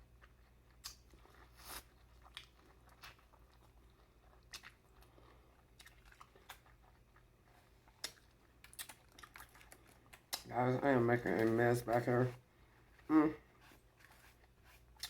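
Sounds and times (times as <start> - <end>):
person chewing corn: 0.0 - 15.0
sharp bites and wet clicks: 0.2 - 1.2, 2.2 - 12.1.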